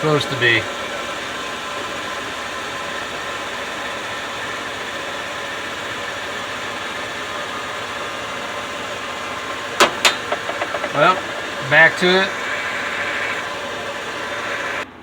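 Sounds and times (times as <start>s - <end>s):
machine hiss: 0.0s - 14.9s
faint machine whine: 0.0s - 15.0s.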